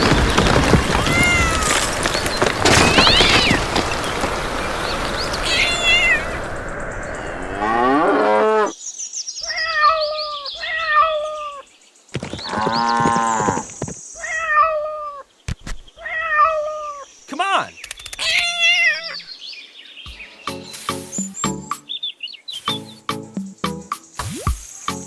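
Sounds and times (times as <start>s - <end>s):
rushing noise: 2.7s - 7.8s.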